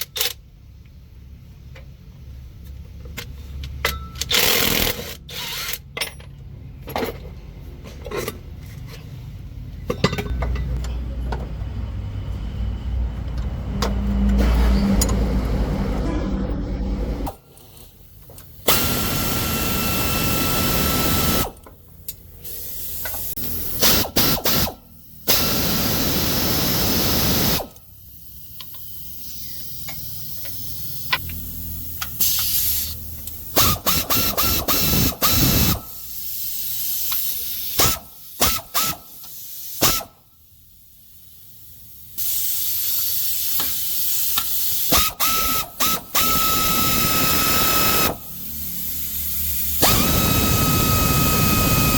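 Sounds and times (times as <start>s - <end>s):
power tool whining: 44.9s - 48.3s, 49.8s - 51.9s.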